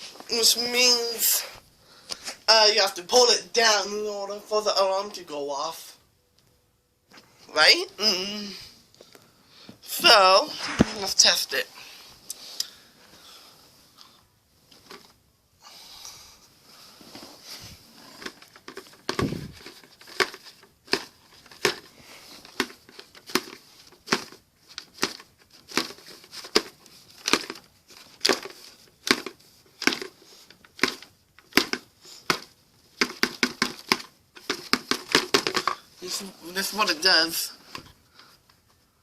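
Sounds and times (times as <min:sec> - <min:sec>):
faint handling: 0:16.3 - 0:39.0.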